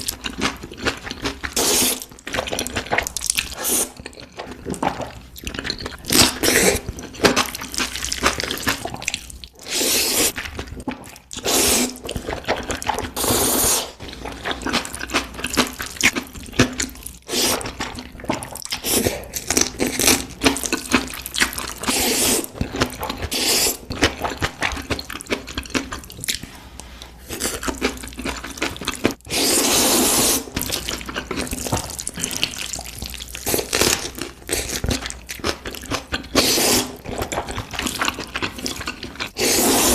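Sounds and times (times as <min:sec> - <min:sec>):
wet eating sounds: 0:00.0 - 0:39.9
slurping: 0:01.4 - 0:07.6, 0:08.2 - 0:39.9.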